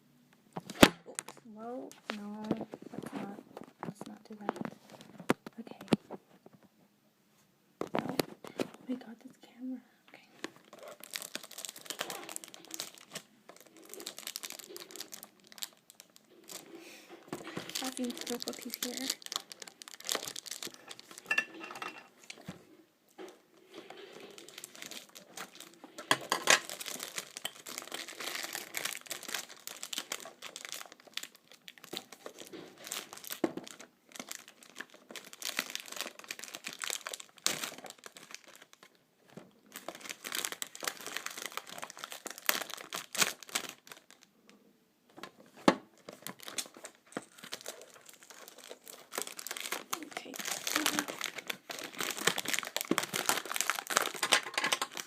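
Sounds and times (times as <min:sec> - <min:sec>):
packaging crinkling and tearing: 0:10.4 - 0:21.4, 0:23.2 - 0:44.3, 0:45.4 - 0:55.0.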